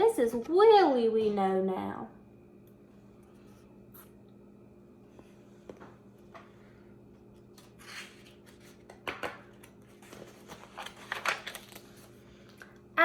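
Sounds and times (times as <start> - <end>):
paper pages rustling: 7.4 - 12.6.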